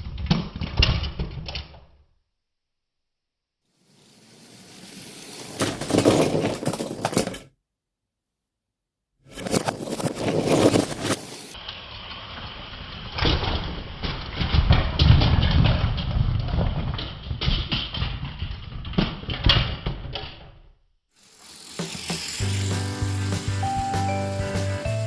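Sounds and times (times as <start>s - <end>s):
toy train motor whirring: 3.9s - 6.2s, 9.8s - 13.2s, 21.2s - 25.0s.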